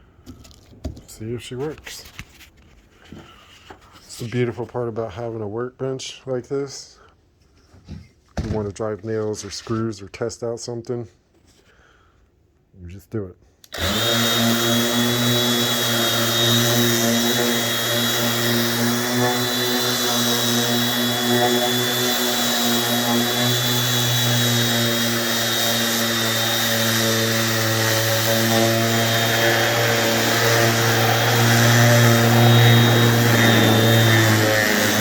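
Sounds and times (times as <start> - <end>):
palm sander motor hum: 13.7 - 35.0.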